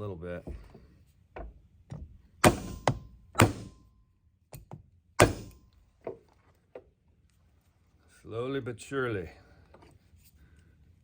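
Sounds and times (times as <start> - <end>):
hammer knocks on wooden block: 2.4 - 3.8.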